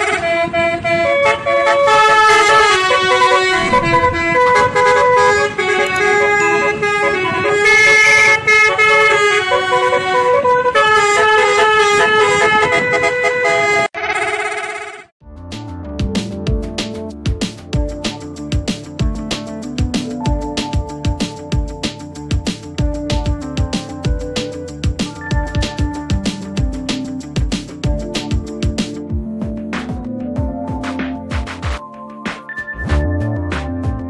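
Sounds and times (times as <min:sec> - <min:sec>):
multi-tone air horn tune: 0:00.0 - 0:15.0.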